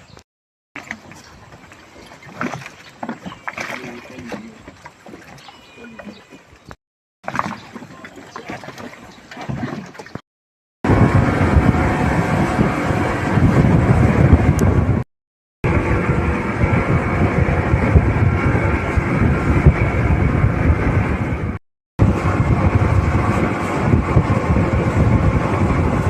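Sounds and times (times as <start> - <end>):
boat engine running: 0.8 - 6.5, 7.2 - 10.2, 10.8 - 26.0
wind on microphone: 10.8 - 26.0.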